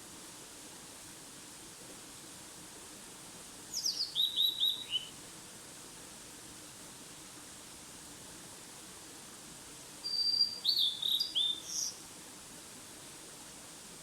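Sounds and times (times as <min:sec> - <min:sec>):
songbird singing: 0:03.7 - 0:05.1, 0:10.0 - 0:12.0.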